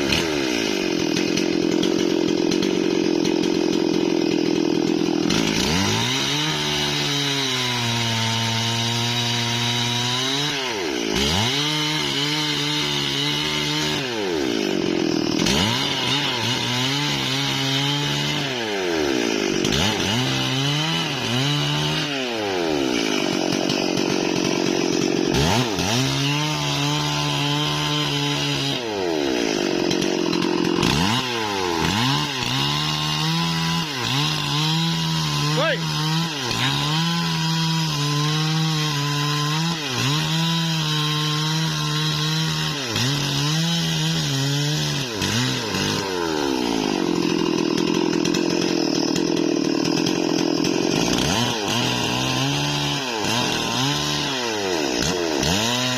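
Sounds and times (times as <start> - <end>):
chainsaw cutting through wood: 0.0 - 55.9.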